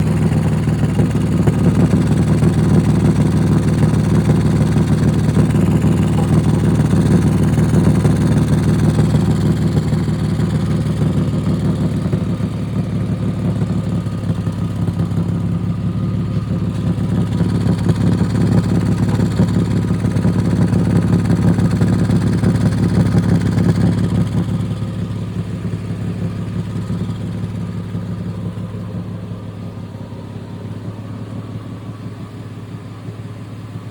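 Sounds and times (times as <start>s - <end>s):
car engine idling: 0.0s - 33.9s.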